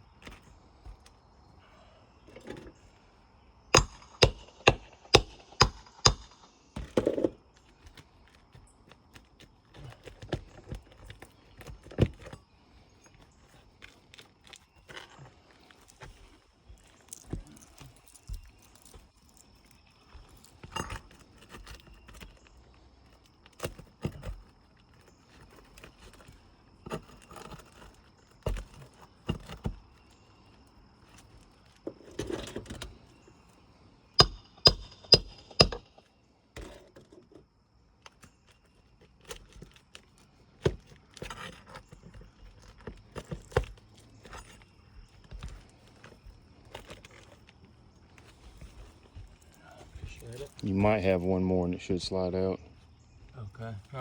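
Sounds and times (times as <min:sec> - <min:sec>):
sharp metallic taps: 0:03.7 - 0:06.5, 0:34.2 - 0:36.0
pry bar scraping shingles: 0:03.8 - 0:33.2, 0:36.6 - 0:49.2.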